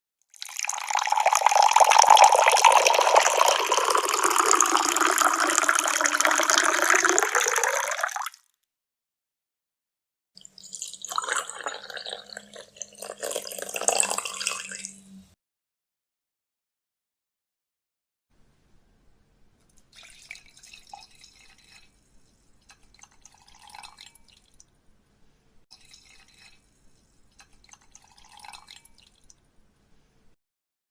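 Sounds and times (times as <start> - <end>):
water pouring into a glass: 0.3 - 8.4, 10.4 - 15.2, 19.9 - 21.9, 22.7 - 24.6, 25.8 - 26.6, 27.4 - 29.4.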